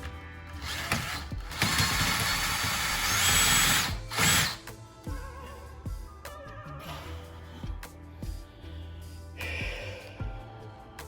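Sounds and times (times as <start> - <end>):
power drill whining: 0.5 - 4.7.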